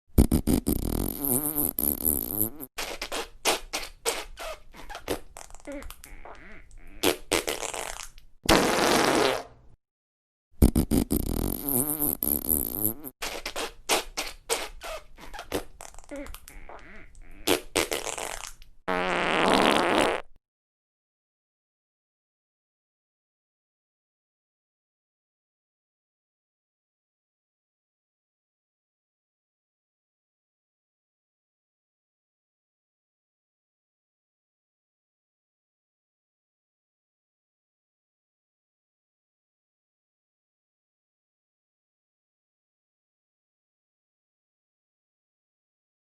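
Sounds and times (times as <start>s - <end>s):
wet sputtering farts: 0.2s - 9.6s, 10.6s - 20.4s.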